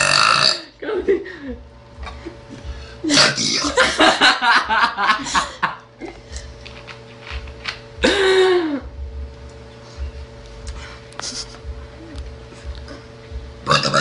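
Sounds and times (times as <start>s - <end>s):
loud belch: 0.0s - 0.7s, 3.1s - 3.7s, 13.6s - 14.0s
girl laughing: 0.8s - 6.4s, 8.0s - 8.9s.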